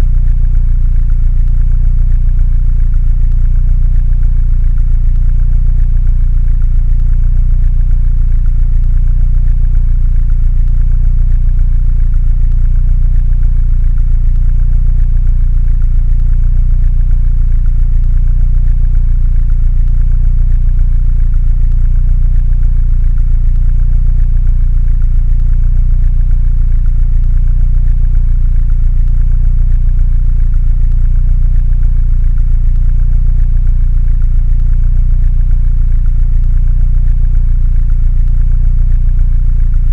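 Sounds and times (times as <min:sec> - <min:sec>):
car engine idling: 0:00.0 - 0:39.9.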